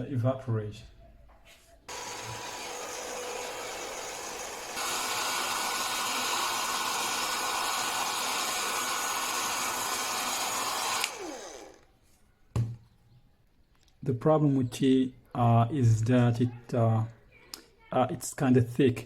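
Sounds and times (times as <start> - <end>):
hair dryer blowing: 1.9 - 11.8.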